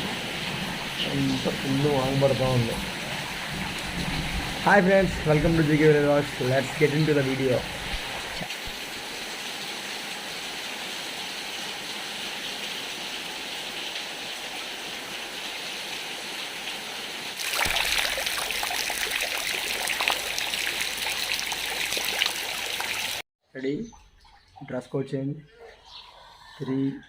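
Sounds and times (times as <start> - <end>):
heavy rain: 0.0 - 23.2
raindrops tapping: 17.4 - 23.2.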